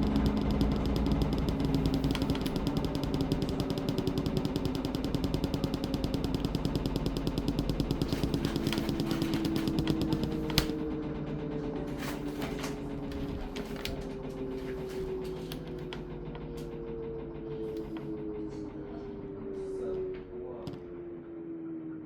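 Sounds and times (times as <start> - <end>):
washing machine rattling: 0.0 - 10.9, 11.8 - 17.9
low motor hum: 0.0 - 21.8.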